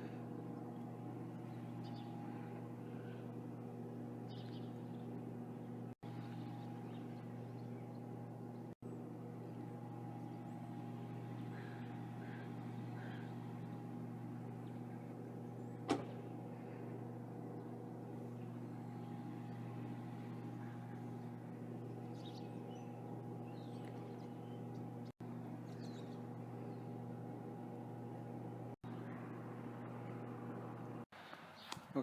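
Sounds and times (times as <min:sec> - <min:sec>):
low mechanical hum: 0:00.0 - 0:32.0.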